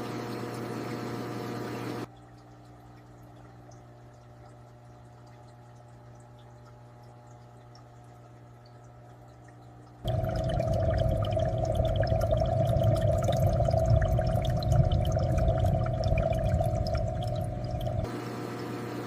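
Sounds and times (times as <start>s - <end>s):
water pouring and trickling: 2.0s - 18.1s
droplet splashes: 10.1s - 18.1s
steady low rumble: 10.1s - 18.1s.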